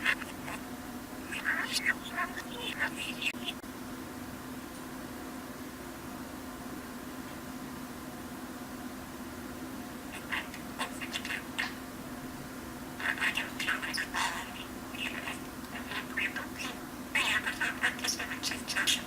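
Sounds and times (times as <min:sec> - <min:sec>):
steady low hum: 0:00.0 - 0:19.0
budgerigar chattering: 0:01.3 - 0:03.6, 0:10.2 - 0:11.8, 0:13.0 - 0:19.0.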